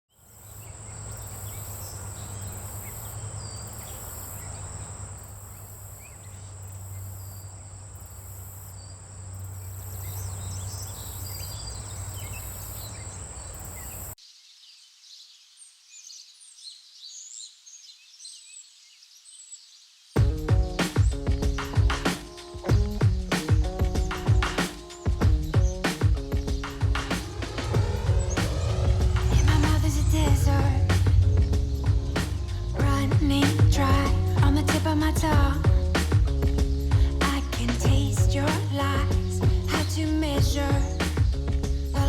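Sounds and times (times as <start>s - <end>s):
birds chirping: 0.3s - 14.5s, 16.0s - 42.0s
music: 20.2s - 42.0s
high-pitched whine: 24.1s - 34.8s
low hum: 26.6s - 39.8s.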